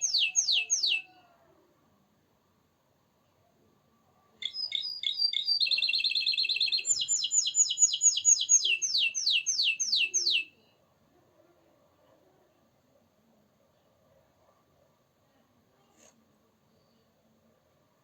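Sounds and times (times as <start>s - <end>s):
canary singing: 0.0s - 1.2s, 4.4s - 10.7s.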